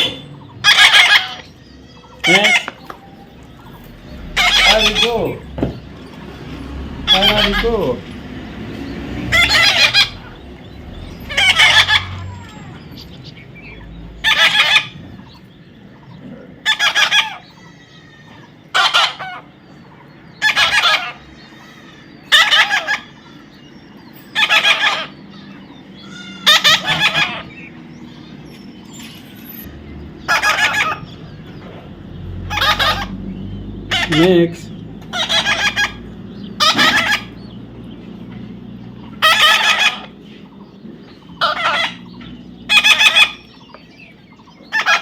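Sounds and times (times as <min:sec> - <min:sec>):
parrot giving harsh calls: 0:00.0 - 0:03.3, 0:03.9 - 0:05.5, 0:07.0 - 0:08.0, 0:09.3 - 0:10.4, 0:11.1 - 0:13.0, 0:14.2 - 0:15.0, 0:16.6 - 0:19.5, 0:20.4 - 0:23.1, 0:24.4 - 0:25.2, 0:26.0 - 0:27.6, 0:30.2 - 0:31.1, 0:32.4 - 0:33.2, 0:33.9 - 0:37.4, 0:39.2 - 0:40.2, 0:41.4 - 0:42.1, 0:42.7 - 0:43.5, 0:44.7 - 0:45.0.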